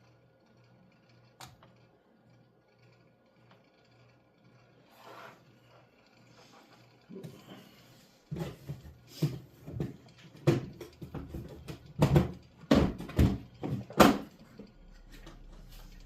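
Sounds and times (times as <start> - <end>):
hard objects knocking on workbench: 9.2 - 14.2.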